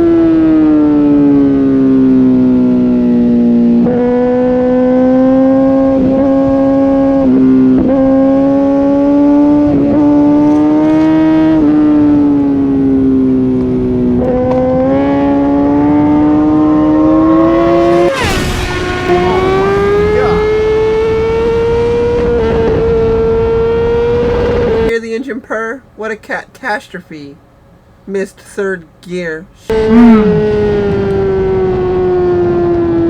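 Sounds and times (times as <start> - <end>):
motorcycle engine revving high: 0.0 - 24.9, 29.7 - 33.0.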